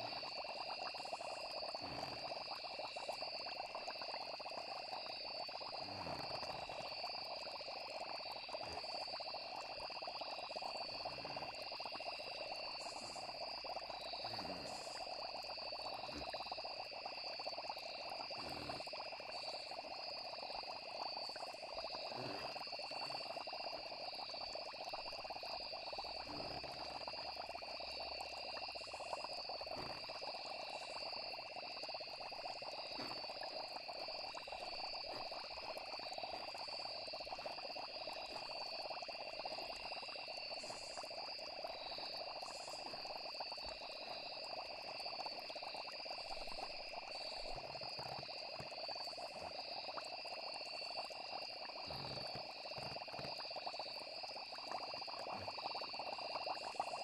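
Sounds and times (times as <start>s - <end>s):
crickets trilling: 0.0s - 57.0s
frogs chorus: 0.0s - 57.0s.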